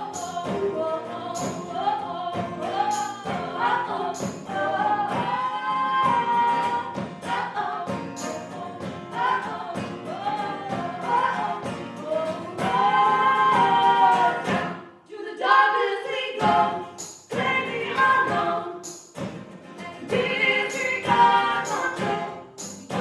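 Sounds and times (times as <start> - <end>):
voices singing harmonies: 0.0 - 19.1, 19.8 - 23.0
sharp percussive strokes: 20.2 - 23.0.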